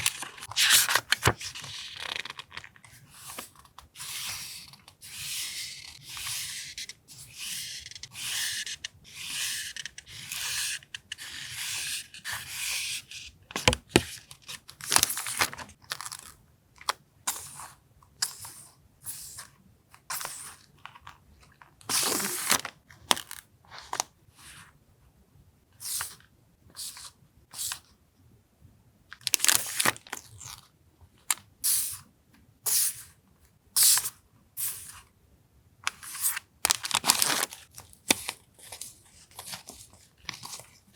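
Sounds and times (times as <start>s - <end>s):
packaging rustling: 14.7s - 16.3s, 29.2s - 30.2s, 36.7s - 40.8s
plastic packaging crinkling: 14.8s - 16.3s, 29.2s - 30.2s, 36.7s - 38.8s.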